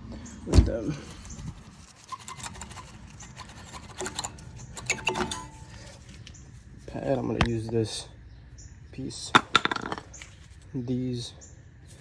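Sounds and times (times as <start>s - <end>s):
metal brake parts clicking and scraping: 0.2s - 6.4s, 9.3s - 10.7s
thin metal ringing: 2.1s - 6.1s.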